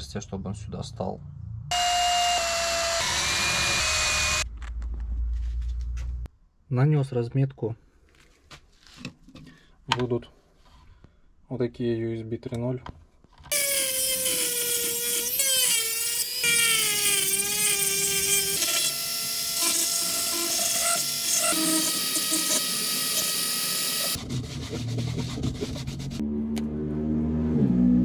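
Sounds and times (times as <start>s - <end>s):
power tool motor cutting steel: 1.7s - 4.4s, 13.5s - 24.2s.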